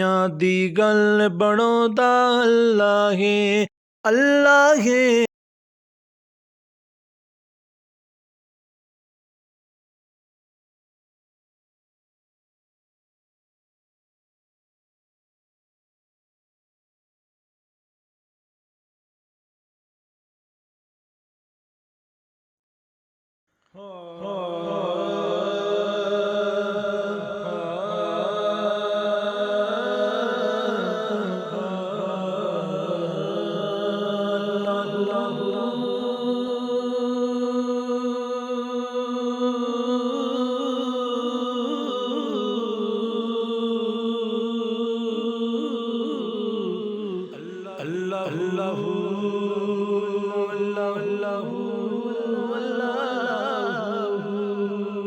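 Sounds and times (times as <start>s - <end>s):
person singing unaccompanied: 0.0s - 5.3s.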